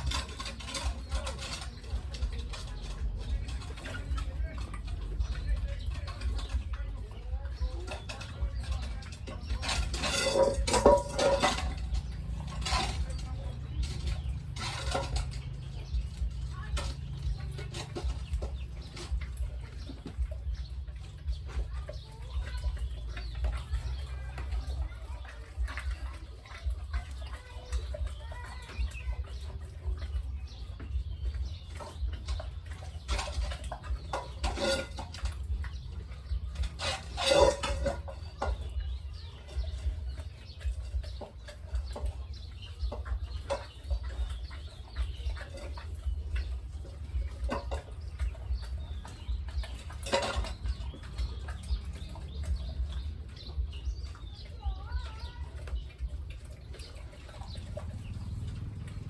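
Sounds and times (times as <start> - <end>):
chickens clucking: 0.0 - 59.0
low rumble: 0.0 - 59.0.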